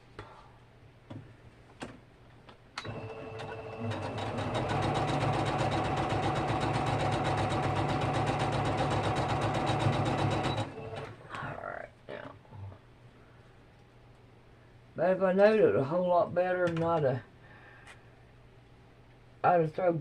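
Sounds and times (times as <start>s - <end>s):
sewing machine stitching: 2.8s - 11.2s.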